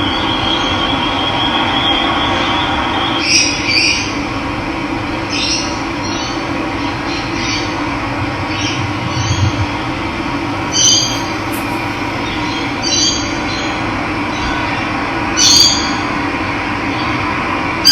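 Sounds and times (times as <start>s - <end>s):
birds calling: 10.6s - 13.2s.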